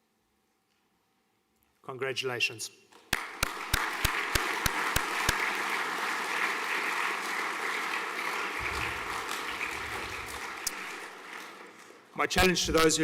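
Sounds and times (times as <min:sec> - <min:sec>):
audience applauding: 0:03.0 - 0:12.5.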